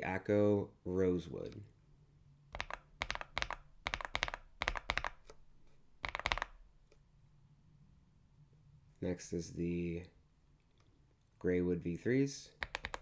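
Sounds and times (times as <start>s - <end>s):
typing on mechanical keyboard: 2.6s - 5.3s, 6.0s - 6.6s, 12.6s - 13.0s.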